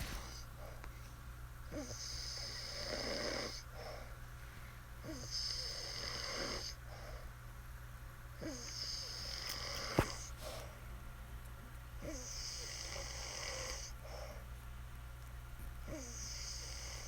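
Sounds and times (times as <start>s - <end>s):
woman snoring: 1.7s - 3.6s, 5.0s - 6.8s, 8.4s - 10.2s, 12.0s - 13.9s, 15.9s - 17.0s.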